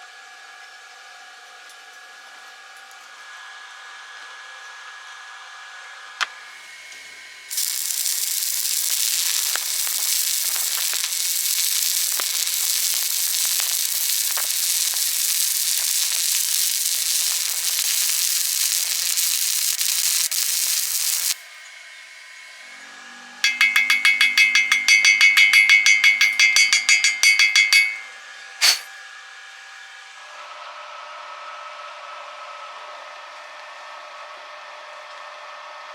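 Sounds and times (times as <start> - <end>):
welding arc crackling and hissing: 7.5 - 21.6, 23.4 - 28.0, 28.6 - 28.9
rapid metallic tapping: 23.4 - 28.9
sharp click: 23.5 - 28.9.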